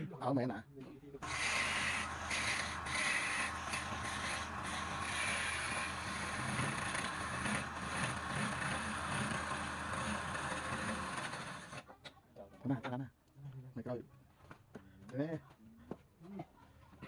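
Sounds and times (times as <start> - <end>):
rough scraping: 1.2 - 11.8
wood lathe running: 1.2 - 11.8.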